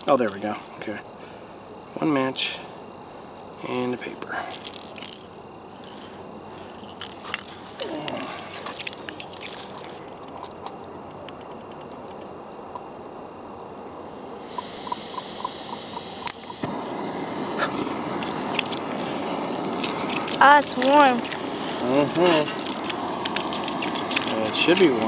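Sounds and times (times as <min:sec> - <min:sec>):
gas burner hissing: 0:13.9 - 0:25.0.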